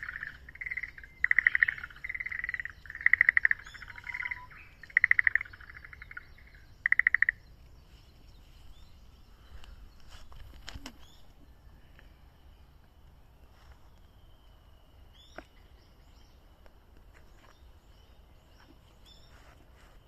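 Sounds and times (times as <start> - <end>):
distant bird whistling song: 0.0 - 7.5
faint bird chirps: 0.0 - 16.4.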